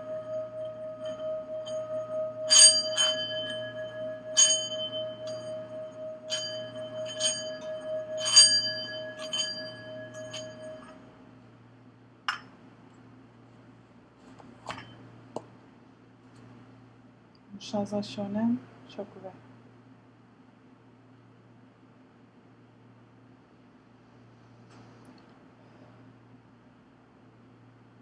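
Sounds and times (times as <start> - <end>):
small bell strikes: 0.0 - 11.0
singing bowl ringing: 0.0 - 11.2.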